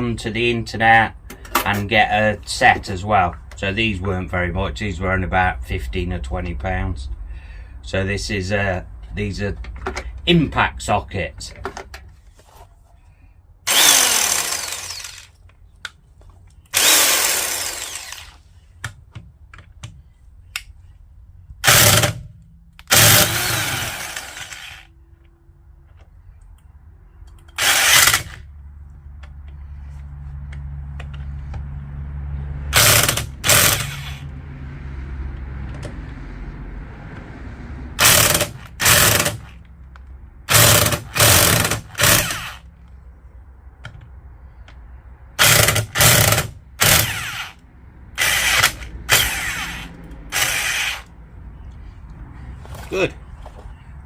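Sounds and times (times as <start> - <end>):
impact wrench hammering: 21.6 - 24.8, 32.8 - 34.2, 38.0 - 39.6, 40.5 - 42.6, 45.4 - 47.6, 48.2 - 51.1.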